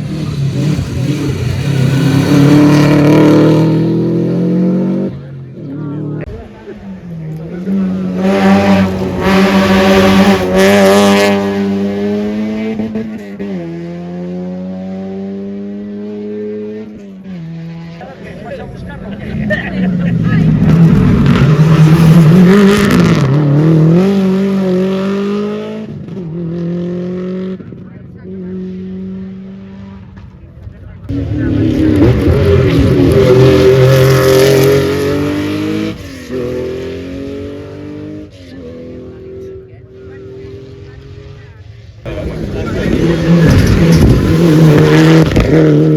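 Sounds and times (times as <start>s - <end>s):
rally car engine revving: 0.0s - 45.9s
gear change: 42.1s - 45.9s.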